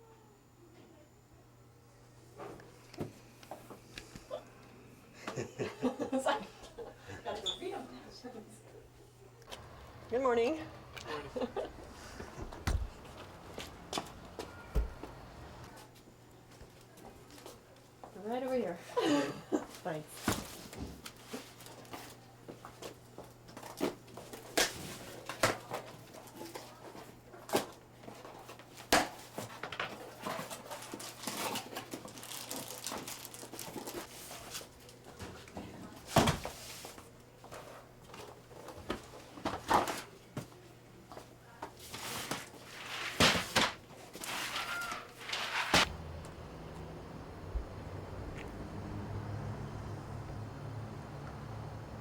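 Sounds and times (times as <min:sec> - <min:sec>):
low electrical hum: 0:00.0 - 0:52.0
boxes knocking and rustling: 0:09.5 - 0:15.8, 0:23.6 - 0:40.6, 0:41.7 - 0:46.1.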